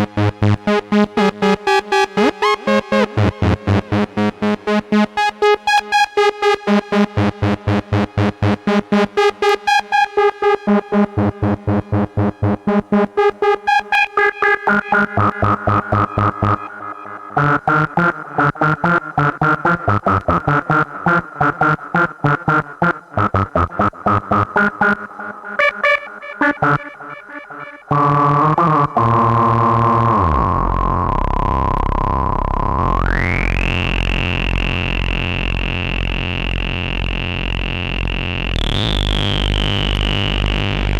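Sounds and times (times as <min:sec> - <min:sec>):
synthesizer sequenced notes: 0:00.0 - 0:40.9
synthesizer sustained gliding tone: 0:26.8 - 0:40.9.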